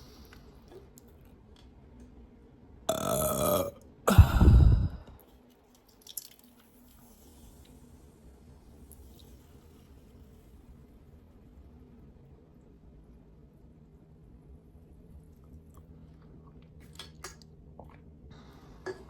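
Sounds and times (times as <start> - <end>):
person burping: 2.9 - 5.1.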